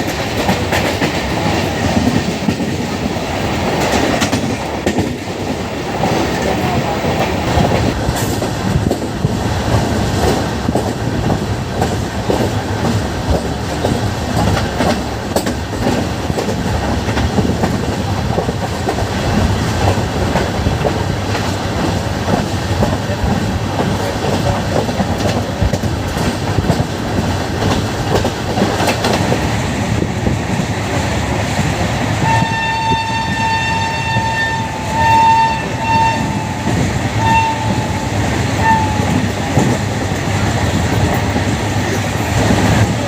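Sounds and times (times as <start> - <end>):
train wheels clattering: 0.0 - 43.0
shrill train horn blasts: 32.2 - 39.2.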